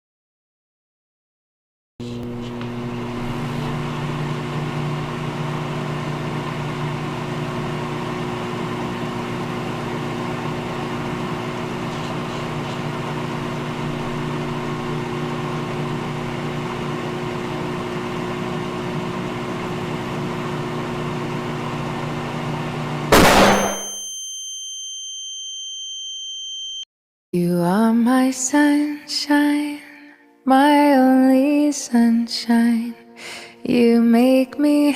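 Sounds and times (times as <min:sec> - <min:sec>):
microwave oven humming: 0:02.0 - 0:24.2
microwave clunk: 0:23.1 - 0:24.0
long high beep: 0:23.1 - 0:26.9.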